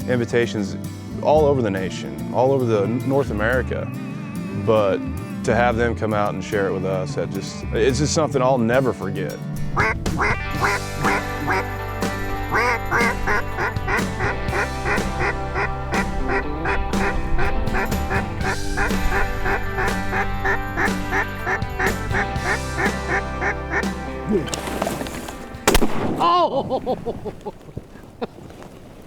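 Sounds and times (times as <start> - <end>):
background music: 0.0 - 26.2
steady low drone: 9.5 - 26.0
duck quacking: 9.6 - 24.5.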